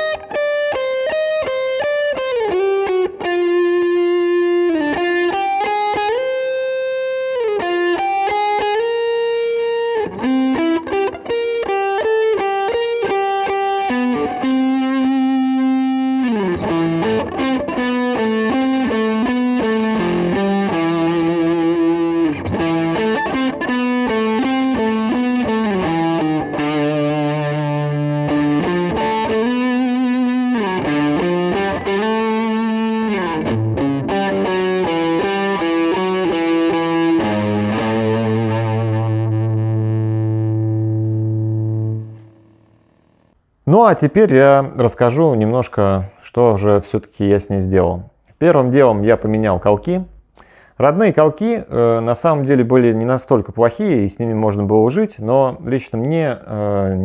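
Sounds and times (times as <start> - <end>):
distorted electric guitar lead: 0.0 - 43.4.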